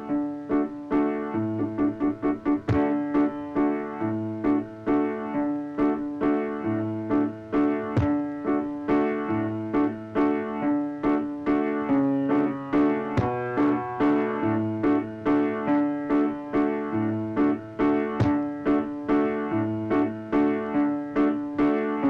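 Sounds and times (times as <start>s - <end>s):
piano-like keyboard chords: 0.0s - 22.0s.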